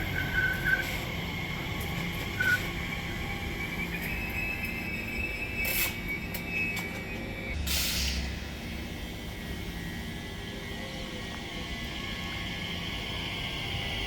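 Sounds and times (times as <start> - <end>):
electric train whine: 0.0 - 14.0
steady hum: 0.0 - 14.0
air brake hiss: 7.6 - 8.4.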